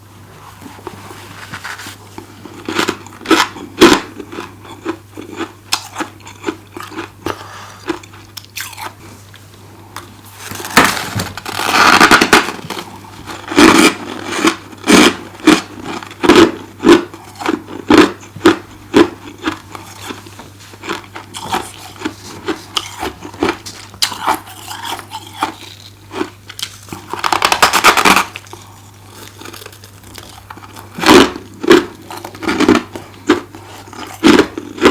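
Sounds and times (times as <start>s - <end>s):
steady low hum: 0.0s - 34.9s
frost being chewed: 0.6s - 34.9s.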